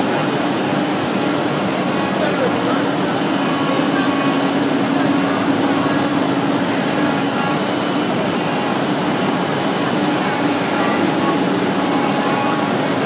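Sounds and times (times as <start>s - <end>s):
wood router running: 0.8s - 13.0s.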